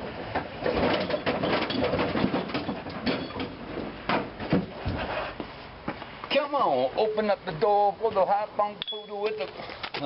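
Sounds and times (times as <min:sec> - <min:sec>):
objects clattering and rattling: 0:00.0 - 0:05.4.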